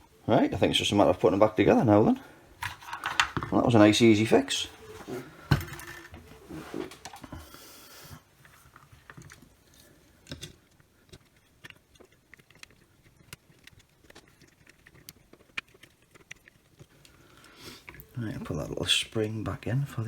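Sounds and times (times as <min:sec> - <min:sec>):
small parts clicking and tapping: 0:02.6 - 0:03.6, 0:08.7 - 0:17.2.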